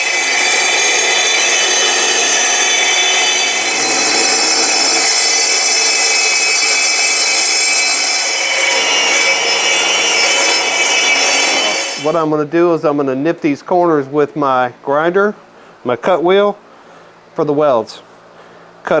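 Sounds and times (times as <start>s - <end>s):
angle grinder grinding steel: 0.0s - 12.2s.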